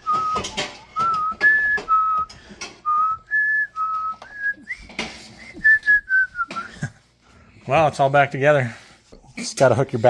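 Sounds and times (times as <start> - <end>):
person whistling a tune: 0.0 - 6.9.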